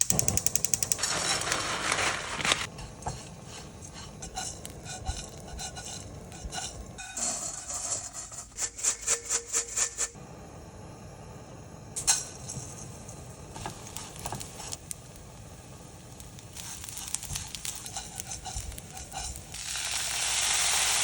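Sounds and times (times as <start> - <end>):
hiss: 8.6 - 21.0.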